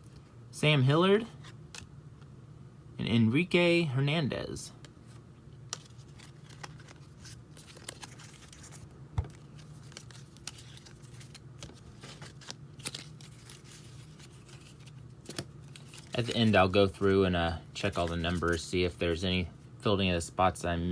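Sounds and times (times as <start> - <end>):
wrapper crinkling and tearing: 5.8 - 8.8, 9.4 - 17.1.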